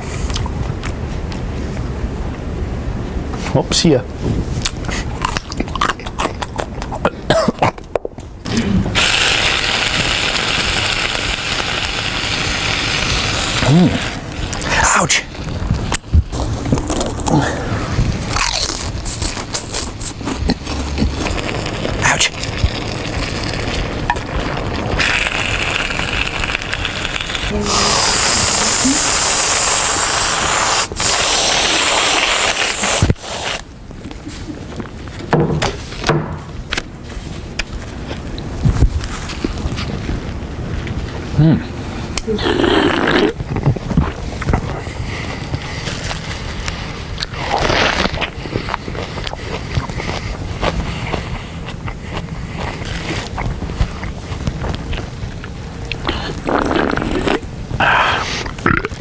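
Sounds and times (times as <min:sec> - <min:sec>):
snack crunching: 0:04.5 - 0:35.0, 0:42.1 - 0:59.0
steady hiss: 0:08.5 - 0:16.5, 0:17.1 - 0:33.7.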